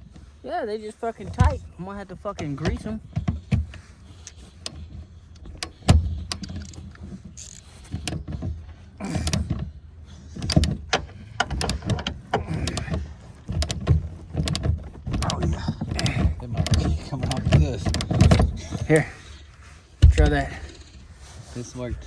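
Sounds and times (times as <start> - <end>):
hand tools clicking on bolts: 3.7 - 9.7, 10.3 - 19.1.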